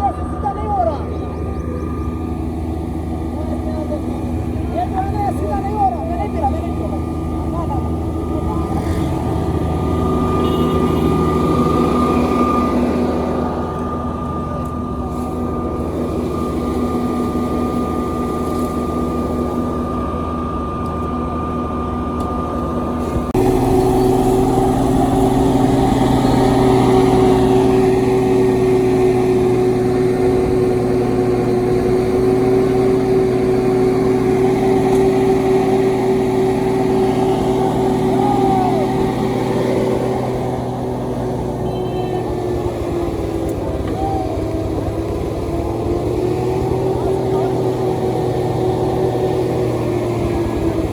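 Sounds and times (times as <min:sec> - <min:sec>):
construction machinery engines running: 0:00.0 - 0:50.9
engine running at steady pitch: 0:00.0 - 0:50.9.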